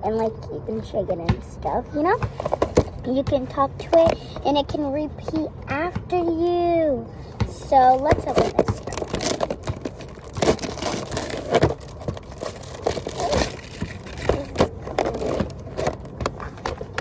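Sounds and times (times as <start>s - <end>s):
plastic and cardboard crinkling: 2.1s - 3.0s, 7.6s - 17.0s.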